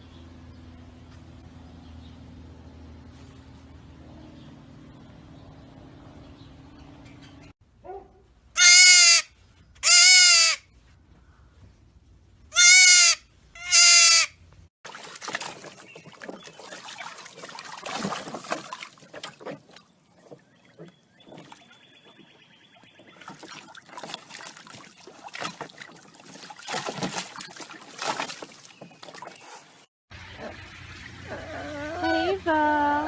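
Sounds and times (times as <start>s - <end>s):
goat bleating: 8.6s - 10.6s, 12.5s - 14.3s.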